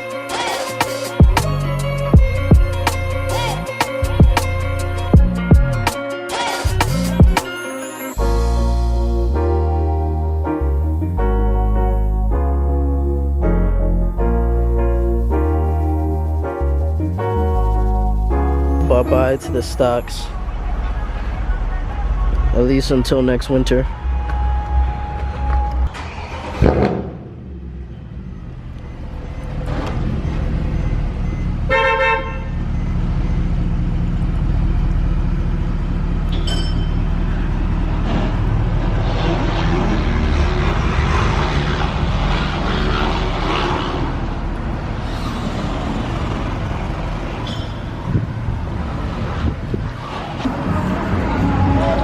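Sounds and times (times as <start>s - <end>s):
vehicle road noise: 0.0s - 52.0s
car horn toot: 31.6s - 32.7s.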